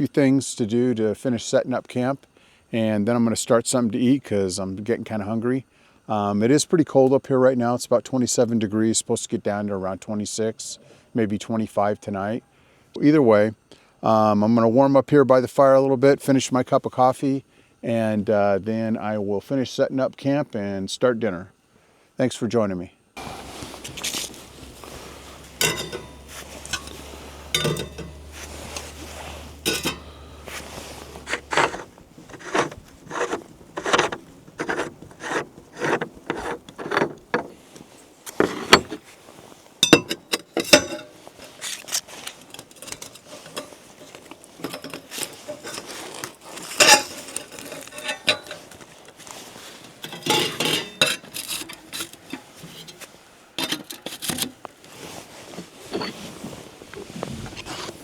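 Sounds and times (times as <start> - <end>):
faint low hum: 23.2 - 37.3
camp gear clinking and rattling: 23.2 - 39.2, 39.8 - 54.6, 55.4 - 58.0.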